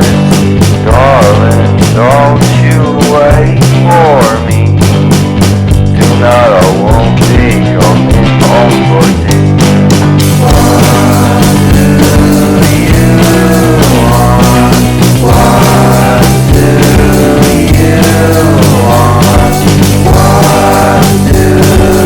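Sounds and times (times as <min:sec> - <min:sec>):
rock music: 0:00.0 - 0:22.0.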